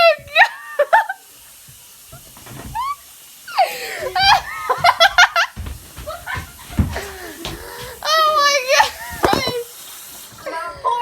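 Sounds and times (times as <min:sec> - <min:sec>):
girls laughing: 0:03.6 - 0:09.6.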